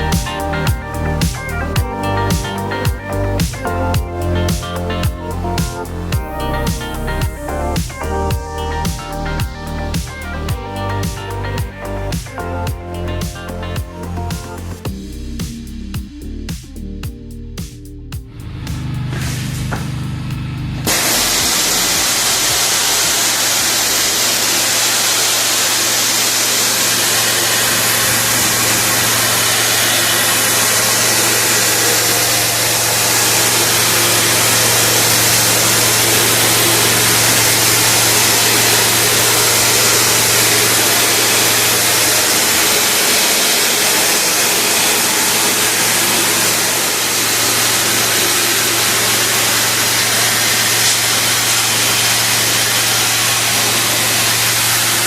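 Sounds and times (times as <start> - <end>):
pressure washer motor hum: 0.0 - 14.9, 18.4 - 55.0
water jet hissing: 20.9 - 55.0.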